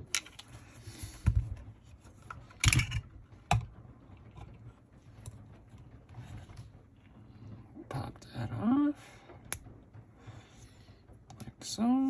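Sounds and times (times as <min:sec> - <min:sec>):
screwdriver and parts clicking: 0:02.6 - 0:03.0.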